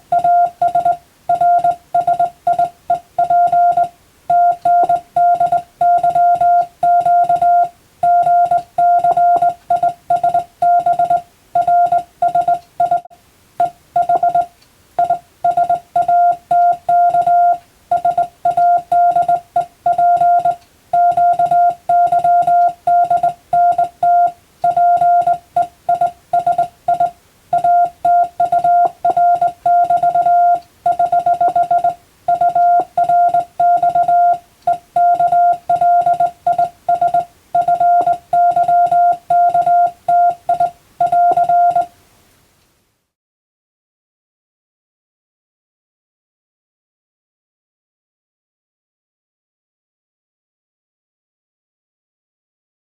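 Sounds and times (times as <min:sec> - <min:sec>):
morse code beeps: 0:00.0 - 0:41.9.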